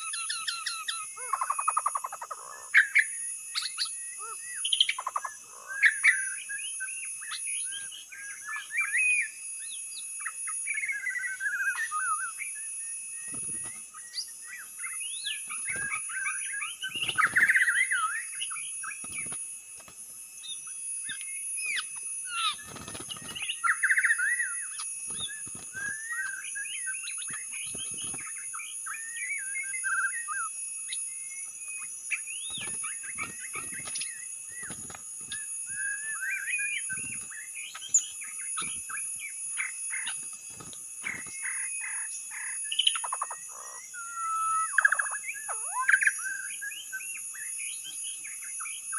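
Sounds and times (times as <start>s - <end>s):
bird singing whistles and chirps: 0.0s - 48.9s.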